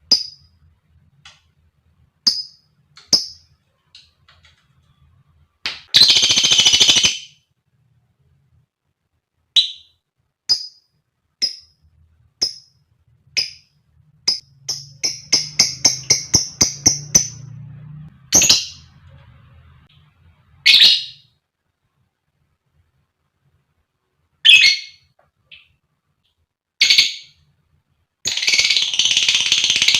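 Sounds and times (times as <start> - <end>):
lovebird chattering and chirping: 5.9 - 7.4, 14.3 - 17.5, 18.3 - 18.9, 24.4 - 25.7, 28.3 - 29.9.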